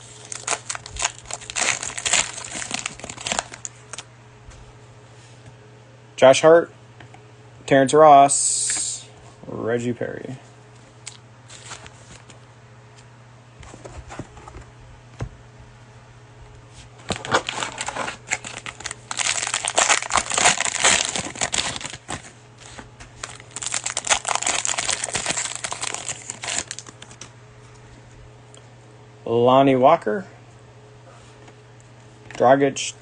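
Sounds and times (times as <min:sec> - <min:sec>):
cellophane wrapper tearing and crinkling: 0:00.0 - 0:04.0, 0:17.1 - 0:27.2.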